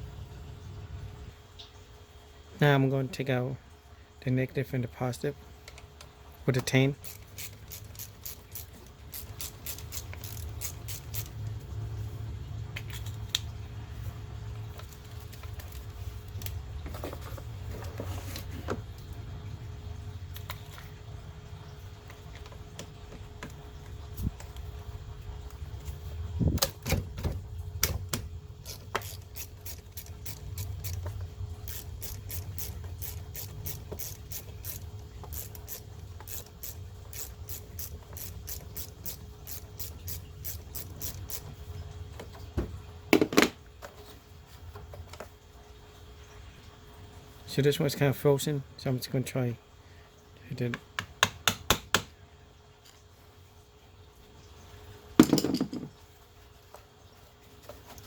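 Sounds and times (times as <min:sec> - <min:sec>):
steady low hum: 0:00.0 - 0:43.1
ratchet wrench clicking: 0:07.0 - 0:11.4, 0:28.6 - 0:41.4.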